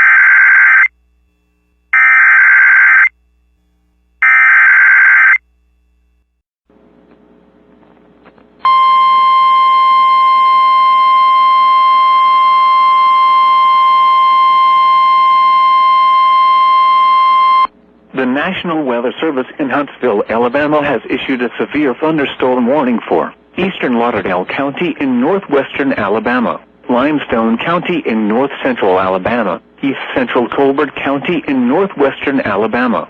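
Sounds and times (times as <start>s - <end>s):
loud steady attention tone: 0.0s - 6.9s, 8.6s - 18.5s.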